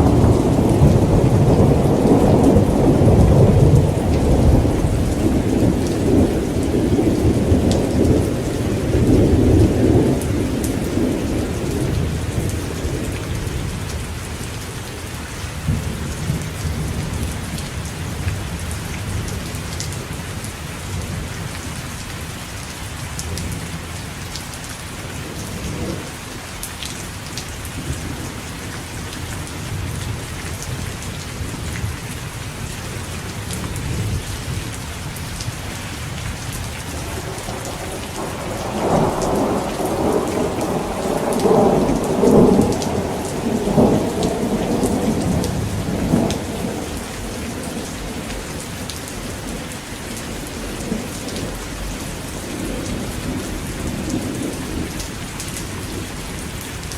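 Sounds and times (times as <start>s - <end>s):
rolling thunder rumble: 0.0s - 14.0s, 29.1s - 56.6s
steady rain falling: 0.0s - 56.9s
rain drop ticks: 38.0s - 49.7s.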